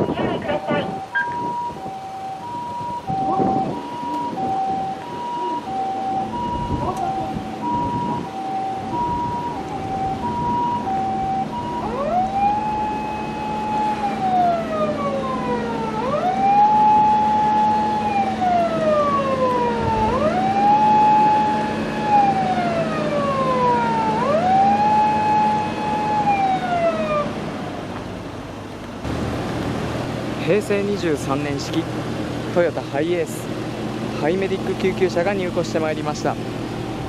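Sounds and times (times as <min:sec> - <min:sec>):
ambulance siren two-tone: 0:00.0 - 0:27.3
ambulance siren wail: 0:00.0 - 0:27.9, 0:33.8 - 0:37.0.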